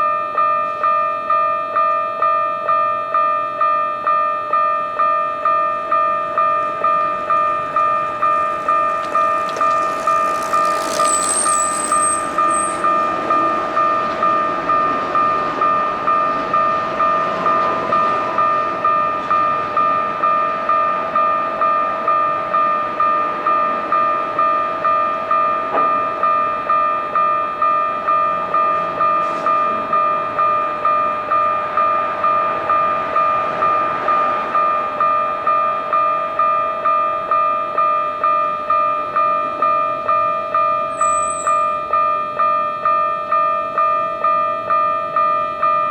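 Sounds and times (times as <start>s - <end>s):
level crossing warning bell: 0.0s - 45.9s
train running over crossing: 0.0s - 45.9s
brief high squeal: 10.7s - 13.0s, 41.0s - 41.7s.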